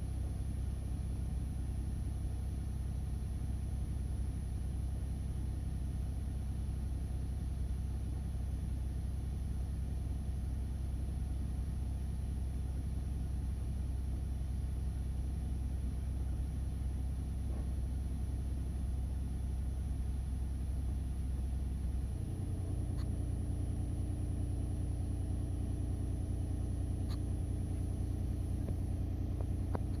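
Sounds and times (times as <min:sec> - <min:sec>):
car engine idling: 0:14.5 - 0:30.0.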